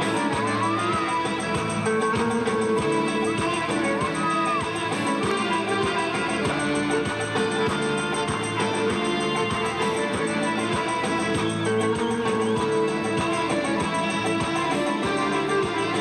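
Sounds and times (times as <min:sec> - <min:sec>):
guitar music with steady beat: 0:00.0 - 0:16.0.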